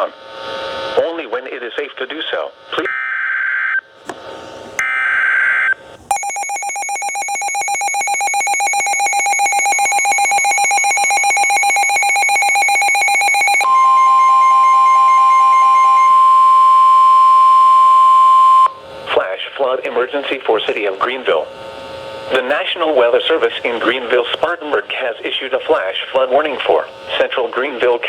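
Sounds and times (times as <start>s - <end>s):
rapidly pulsing alarm beep: 4.8s - 18.8s
steady alarm tone: 4.8s - 18.9s.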